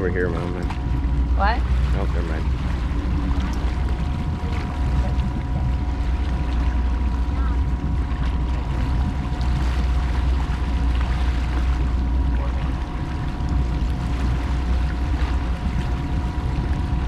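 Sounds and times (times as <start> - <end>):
motorboat engine running: 0.0 - 17.0
water and hull noise: 0.0 - 17.0.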